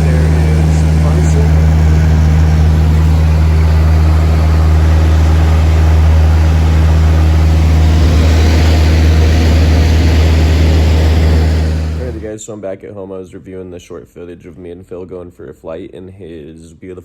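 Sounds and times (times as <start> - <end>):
propeller plane engine drone: 0.0 - 12.3.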